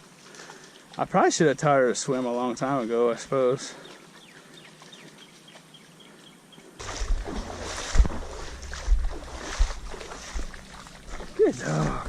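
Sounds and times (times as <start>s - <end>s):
creek hissing: 6.8s - 12.0s
footsteps thumping in water: 6.8s - 12.0s
water splashing from wading: 6.8s - 12.0s.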